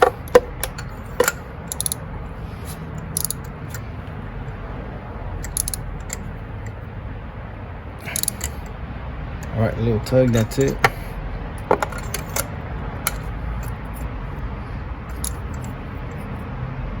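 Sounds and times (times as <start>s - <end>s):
ratchet clicking: 0.0s - 2.0s, 2.6s - 3.9s, 5.4s - 6.8s, 8.0s - 8.8s, 9.4s - 11.0s, 11.6s - 14.1s, 15.1s - 16.3s.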